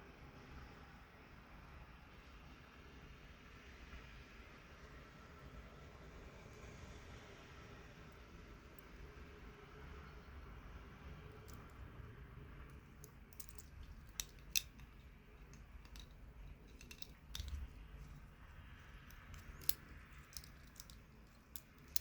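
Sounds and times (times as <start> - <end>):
small hard objects clicking: 12.7 - 22.0.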